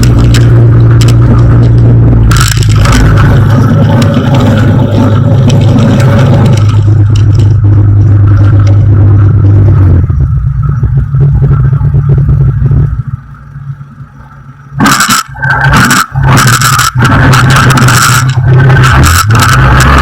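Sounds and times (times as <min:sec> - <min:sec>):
scraping and rattling: 0:00.0 - 0:10.1, 0:14.8 - 0:20.0
propeller aircraft engine drone: 0:00.0 - 0:20.0.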